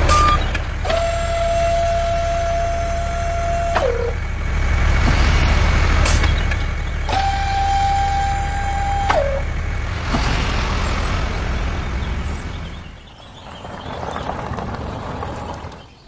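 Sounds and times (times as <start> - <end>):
vehicle horn tone: 0.0 - 4.4, 7.1 - 9.7
rough engine rumble: 0.0 - 16.0.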